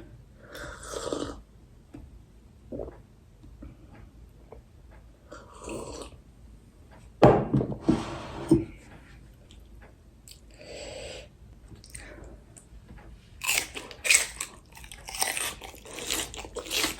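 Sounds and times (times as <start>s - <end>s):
person slurping noodles: 0.5s - 1.4s
person chewing: 13.4s - 16.9s.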